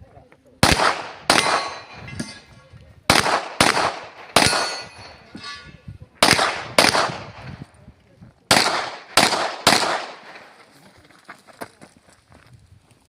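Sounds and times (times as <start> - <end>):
pistol gunshots: 0.6 - 2.0, 3.1 - 5.2, 6.2 - 7.5, 8.5 - 10.5
metallic ring of steel target: 1.3 - 2.6, 4.4 - 5.9.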